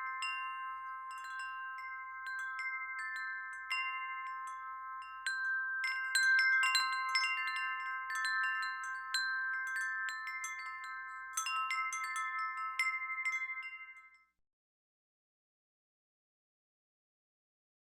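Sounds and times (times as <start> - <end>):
wind chimes ringing: 0.0 - 14.2.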